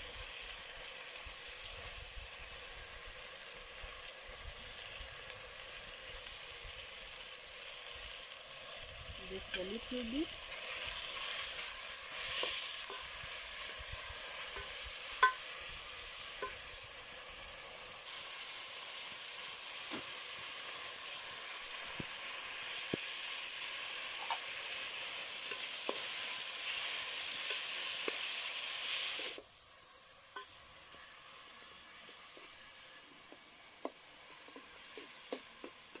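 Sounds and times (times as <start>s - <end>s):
onions frying in hot oil: 0.0s - 36.0s.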